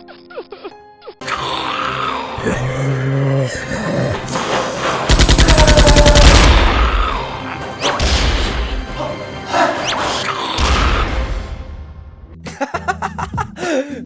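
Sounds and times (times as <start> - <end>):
background music: 0.0 - 14.0
automatic gunfire: 5.1 - 7.2.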